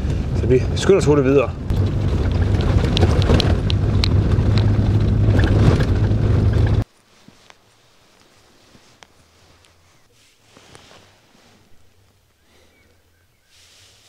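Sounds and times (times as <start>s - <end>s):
vehicle engine drone: 0.0s - 6.8s
rattles and clicks: 1.7s - 6.8s.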